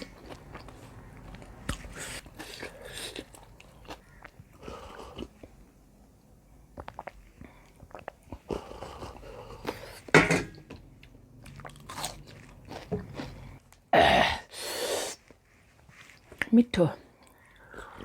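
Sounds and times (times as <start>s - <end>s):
chewing and crunching: 0.0s - 5.6s, 6.8s - 13.8s
wet mouth clicks: 6.8s - 9.8s.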